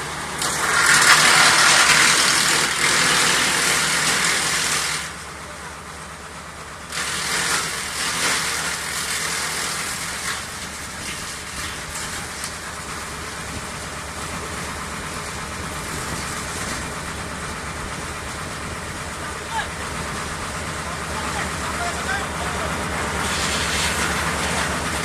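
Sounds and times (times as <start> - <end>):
wood chipper engine running: 0.0 - 25.0.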